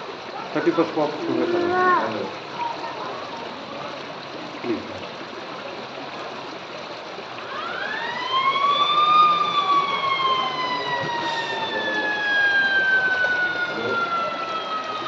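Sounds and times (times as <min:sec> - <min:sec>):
rushing stream water: 0:00.0 - 0:15.0
zipline pulleys whining on cable: 0:07.3 - 0:15.0.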